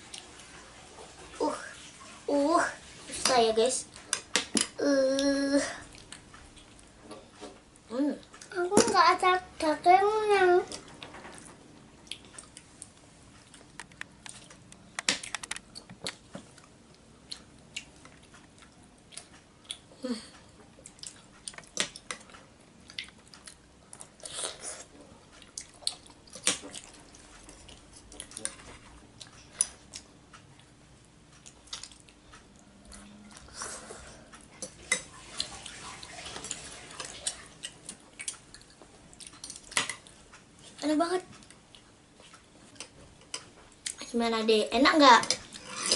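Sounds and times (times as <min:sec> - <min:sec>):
chewing and eating: 0:05.8 - 0:08.6, 0:10.6 - 0:44.1.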